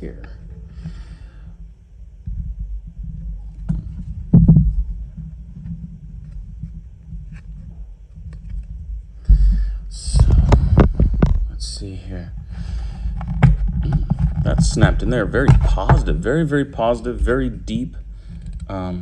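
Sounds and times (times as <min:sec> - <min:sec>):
heavy thump: 0:03.6 - 0:05.1, 0:09.2 - 0:11.6.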